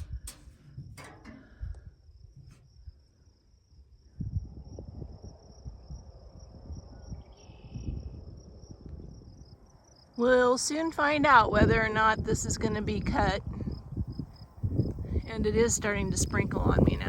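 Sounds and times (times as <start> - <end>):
wind buffeting microphone: 0.0 - 3.1, 4.0 - 9.6, 10.2 - 17.0
insects trilling: 2.1 - 11.2.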